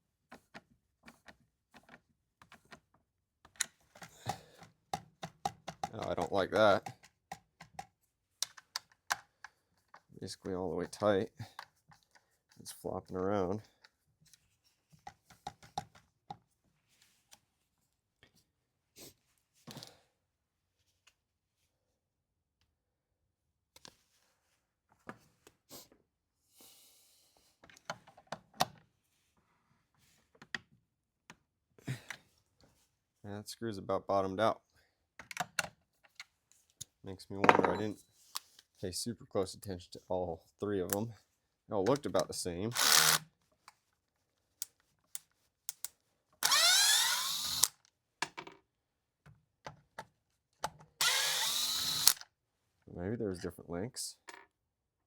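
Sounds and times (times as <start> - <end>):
plastic and metal parts clicking: 3.5 - 10.1
power drill whine: 42.8 - 43.2, 46.4 - 47.7, 51.0 - 52.2.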